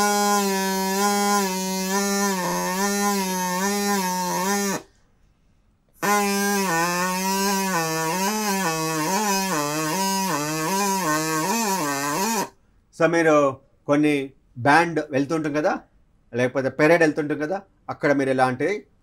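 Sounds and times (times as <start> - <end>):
buzzy straw whistle: 0.0 - 5.0, 6.0 - 12.6.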